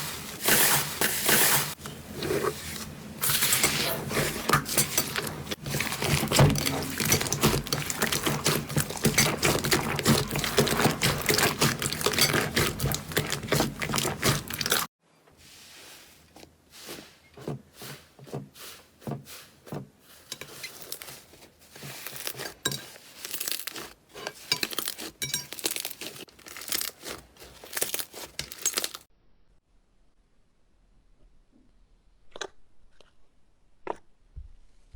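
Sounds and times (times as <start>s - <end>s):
slime crackling and popping: 5.6s - 14.9s, 23.2s - 24.0s, 24.7s - 29.0s.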